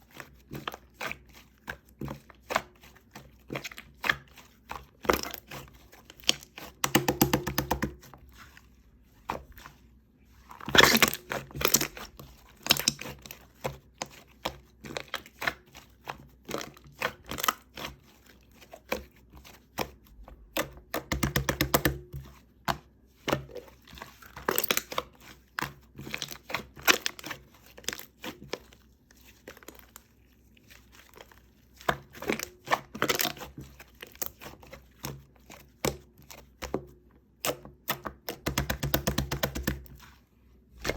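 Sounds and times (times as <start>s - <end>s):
slime crackling and popping: 10.7s - 12.1s.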